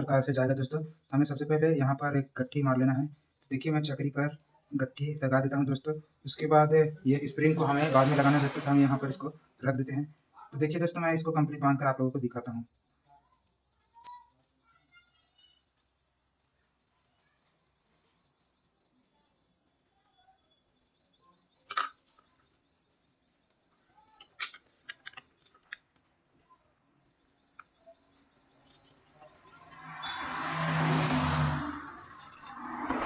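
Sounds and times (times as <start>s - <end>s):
birds chirping: 0.0s - 33.0s
small parts clicking: 13.4s - 14.6s, 21.6s - 22.4s, 23.5s - 26.5s.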